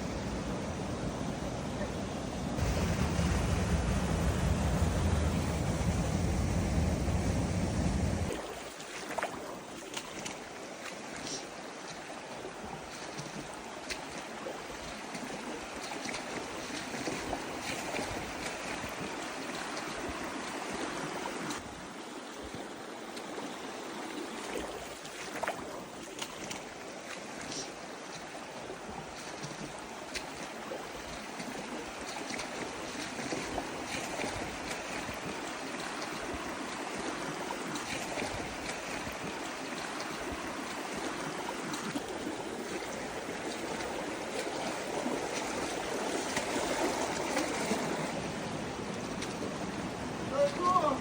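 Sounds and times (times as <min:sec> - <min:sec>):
heavy low rumble: 0:00.0 - 0:08.4
creek water rushing: 0:00.0 - 0:51.0.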